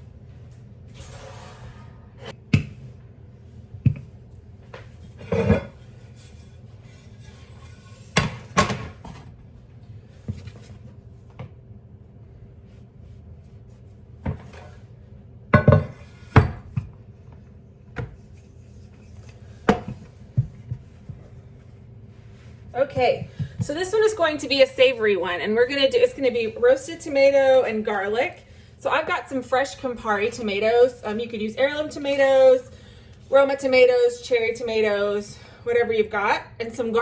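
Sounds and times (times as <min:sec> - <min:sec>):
dishes and pans clacking: 0:05.2 - 0:05.8, 0:15.6 - 0:16.8.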